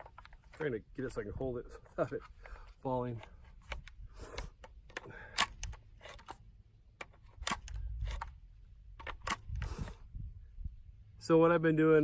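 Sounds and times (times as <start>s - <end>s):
rifle magazine clicks and knocks: 3.2s - 8.3s.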